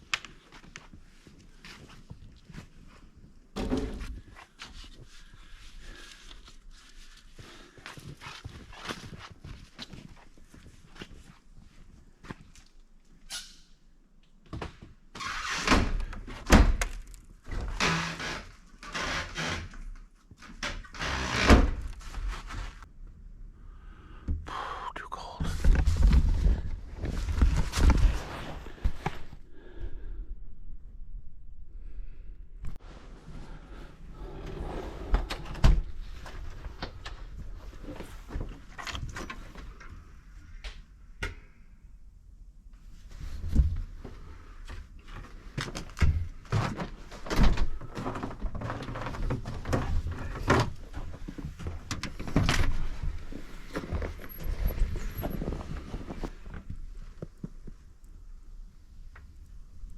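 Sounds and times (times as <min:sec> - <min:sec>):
rustling and knocking of objects: 0:25.4 - 0:29.4, 0:42.9 - 0:58.0.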